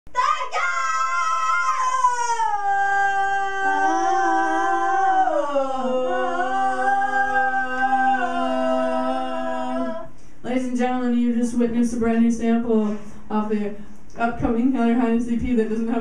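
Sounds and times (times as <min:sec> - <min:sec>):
person singing unaccompanied: 0:02.3 - 0:10.1.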